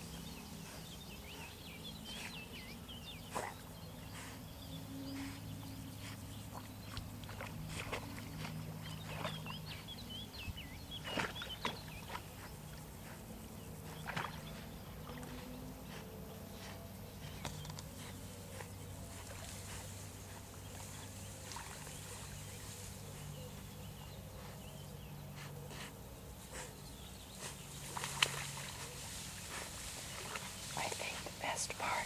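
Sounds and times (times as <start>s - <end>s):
dog wading through water: 0.0s - 31.9s
steady low hum: 0.0s - 32.0s.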